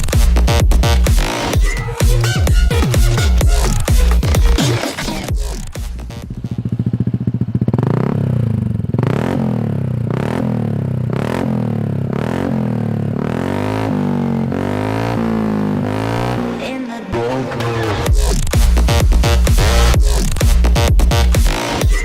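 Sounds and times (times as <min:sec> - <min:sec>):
motorcycle engine idling and revving: 0:00.0 - 0:22.0.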